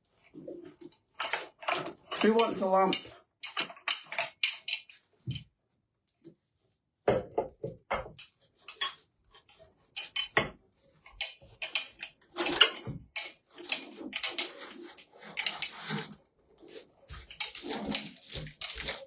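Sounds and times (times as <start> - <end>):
lamp parts clicking and clinking: 1.2 - 5.0, 11.0 - 14.8.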